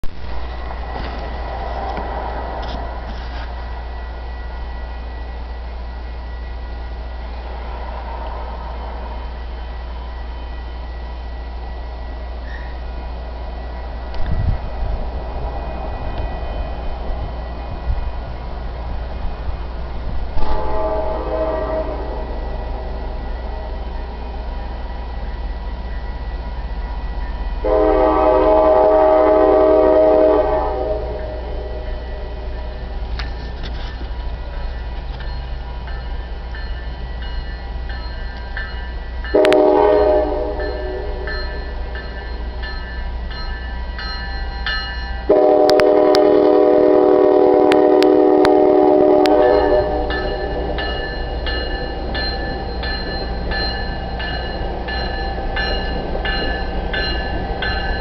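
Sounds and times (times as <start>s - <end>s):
train rumble: 0.0s - 58.0s
train horn blasts: 20.4s - 23.7s, 27.6s - 32.5s, 39.3s - 41.6s, 45.3s - 50.5s
crossing bell ringing: 31.1s - 46.9s, 47.7s - 58.0s.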